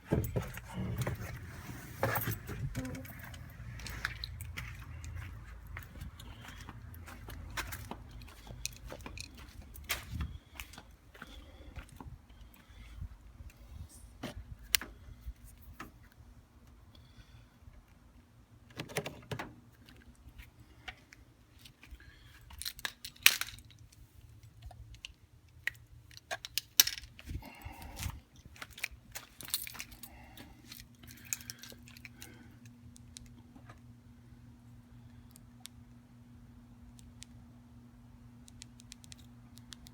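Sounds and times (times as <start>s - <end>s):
keys jangling on a key ring: 28.8s - 32.2s.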